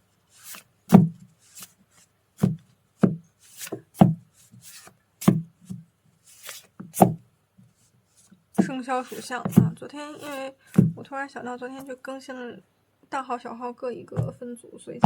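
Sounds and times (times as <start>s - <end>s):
cards knocking on tabletop: 2.4s - 4.2s, 6.4s - 7.2s, 8.6s - 9.8s, 10.7s - 11.0s
card brushing on card: 6.3s - 7.2s, 9.0s - 10.9s.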